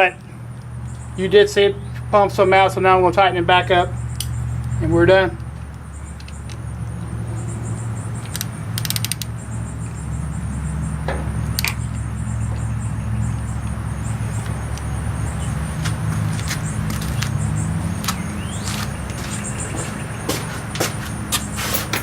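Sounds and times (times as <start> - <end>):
steady low hum: 0.0 - 22.0
ratchet wrench clicking: 8.3 - 9.3.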